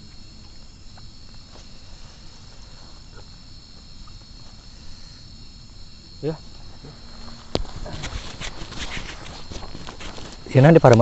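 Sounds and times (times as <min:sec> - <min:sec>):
insects trilling: 0:00.0 - 0:11.0.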